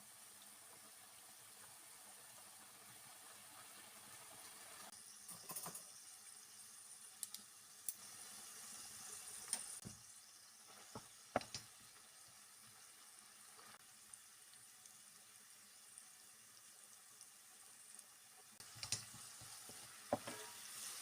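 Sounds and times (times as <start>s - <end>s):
faint steady hiss: 0.0s - 21.0s.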